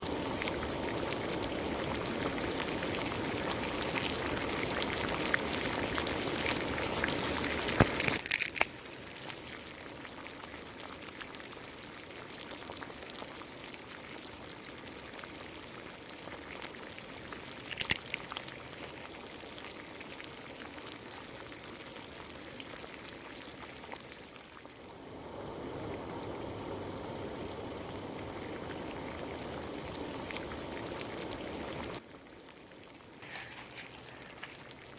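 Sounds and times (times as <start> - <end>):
water bubbling in a pan: 0.0 - 34.9
pan clattering: 33.2 - 34.5.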